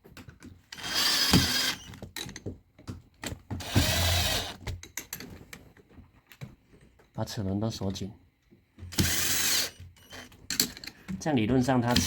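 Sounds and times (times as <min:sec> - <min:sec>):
handling clicks and knocks: 0:00.0 - 0:00.8, 0:01.8 - 0:03.9, 0:04.5 - 0:07.2, 0:09.9 - 0:12.0
electric screwdriver running: 0:00.8 - 0:01.9, 0:03.6 - 0:04.6, 0:09.0 - 0:09.7.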